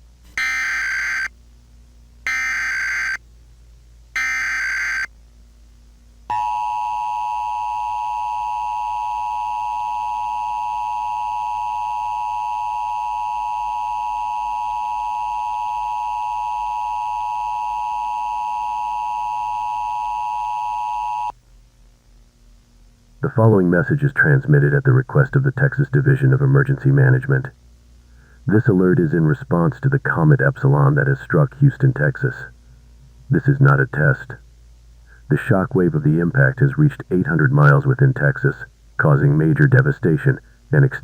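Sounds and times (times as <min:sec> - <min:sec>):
data tone bursts: 0:00.4 - 0:01.3, 0:02.3 - 0:03.2, 0:04.2 - 0:05.1
two-tone attention signal: 0:00.4 - 0:01.3, 0:02.3 - 0:03.2, 0:04.2 - 0:05.1.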